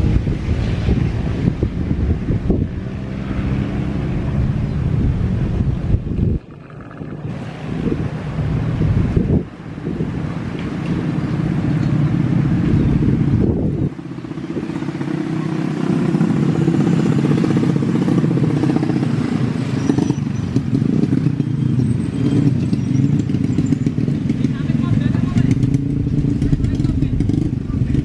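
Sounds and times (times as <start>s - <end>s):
engine running with pulsing hum: 4.1s - 8.6s.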